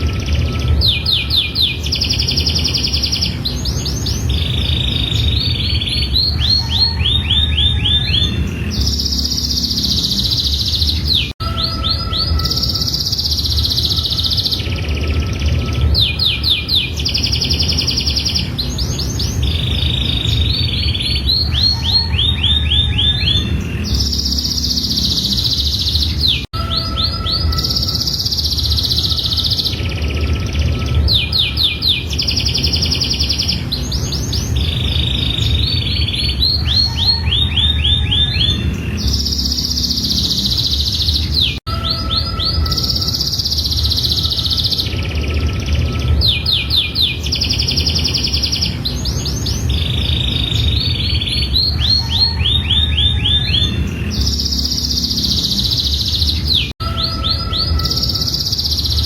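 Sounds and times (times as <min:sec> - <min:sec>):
canary singing trills: 0:00.0 - 0:59.0.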